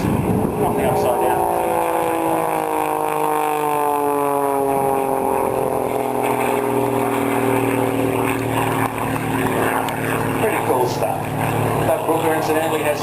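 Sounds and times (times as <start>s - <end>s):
propeller aircraft flying past: 0.0s - 13.0s.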